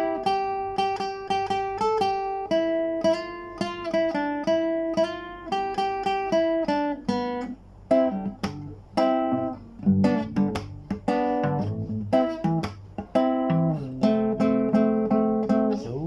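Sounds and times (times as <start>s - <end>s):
plucked string instrument melody: 0.0s - 16.0s.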